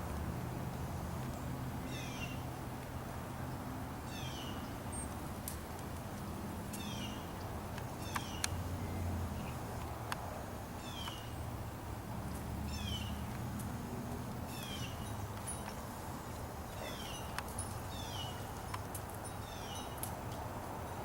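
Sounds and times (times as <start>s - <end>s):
birds calling: 1.3s - 2.5s, 4.1s - 5.2s, 6.7s - 9.8s, 10.8s - 11.5s, 12.7s - 13.3s, 14.4s - 18.5s.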